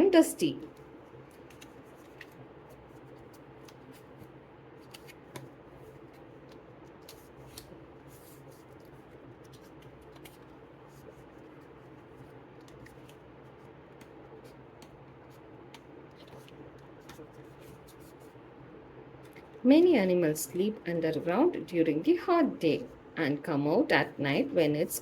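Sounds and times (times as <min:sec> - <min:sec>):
low steady hum: 0:00.0 - 0:25.0
soft clicks of card flaps: 0:00.7 - 0:18.3
paper rustling: 0:00.8 - 0:18.4.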